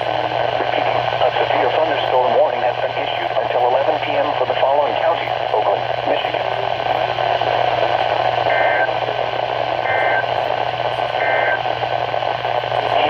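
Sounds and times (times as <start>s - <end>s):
radio static hiss: 0.0s - 13.0s.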